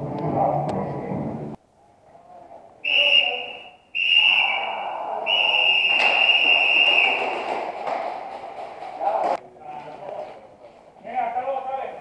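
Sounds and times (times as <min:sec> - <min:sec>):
whistle blasts: 0:02.8 - 0:07.4.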